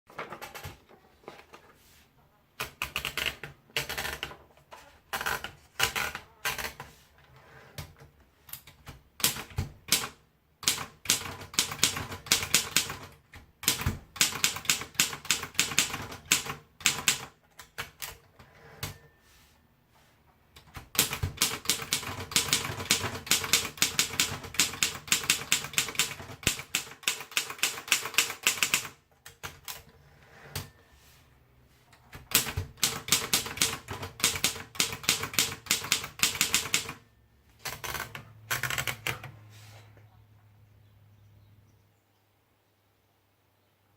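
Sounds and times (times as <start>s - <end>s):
typewriter typing: 2.6s - 4.4s, 5.1s - 6.9s, 8.5s - 18.2s, 20.6s - 29.9s, 32.1s - 39.4s.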